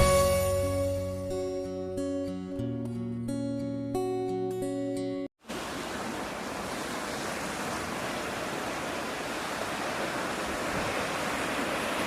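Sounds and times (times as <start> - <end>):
acoustic guitar music: 0.0 - 5.3
sea surf: 5.4 - 12.0
wind: 5.4 - 12.0.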